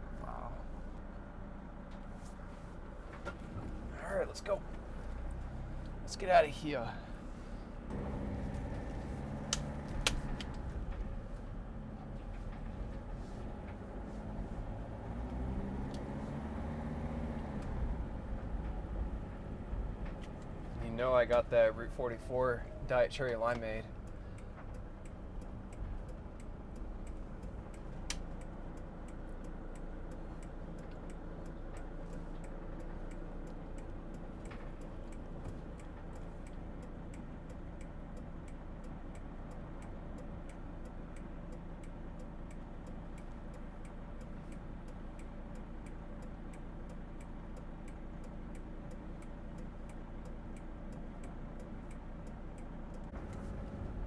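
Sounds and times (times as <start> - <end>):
engine rumble: 0.0 - 54.0.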